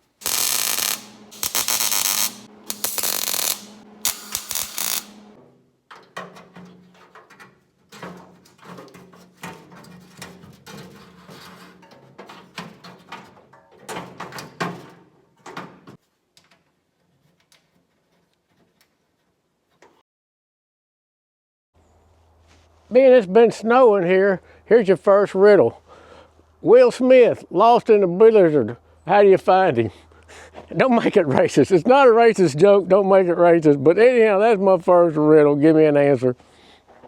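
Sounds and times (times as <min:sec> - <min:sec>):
electrical buzz: 0:00.0 - 0:05.4
welding arc crackling: 0:00.0 - 0:05.4.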